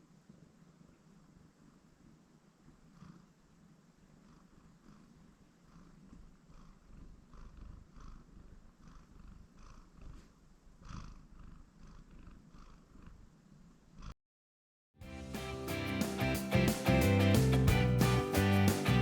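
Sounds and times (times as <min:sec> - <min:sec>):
cat purring: 0:00.0 - 0:14.2.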